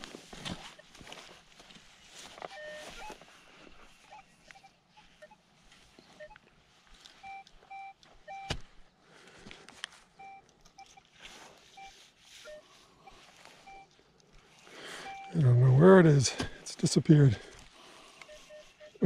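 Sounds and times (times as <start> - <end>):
metal detector beeps: 2.5 - 3.2, 7.2 - 8.6, 10.2 - 14.0, 14.9 - 16.6, 17.3 - 19.0.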